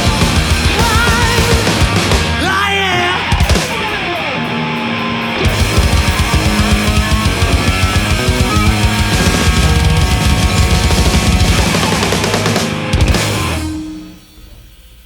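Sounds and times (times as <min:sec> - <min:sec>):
loud rock music: 0:00.0 - 0:14.5
sharp hit: 0:05.4 - 0:15.0.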